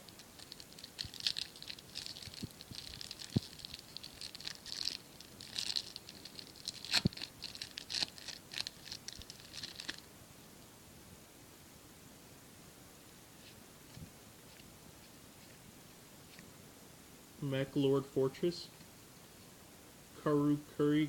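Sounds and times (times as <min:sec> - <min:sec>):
foil wrapper crinkling and tearing: 0:00.1 - 0:10.1.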